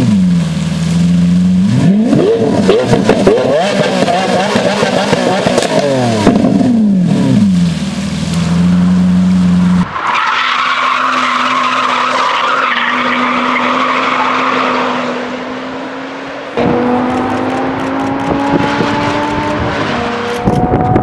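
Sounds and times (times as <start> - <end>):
car engine revving: 0.0 - 21.0
tyres squealing: 9.9 - 15.0.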